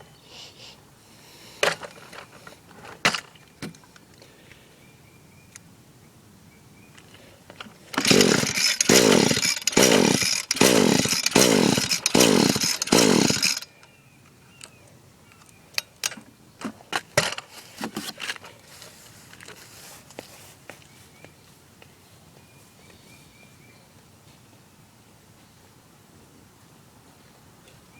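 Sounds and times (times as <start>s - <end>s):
engine turning over on pull-start: 7.9s - 13.7s.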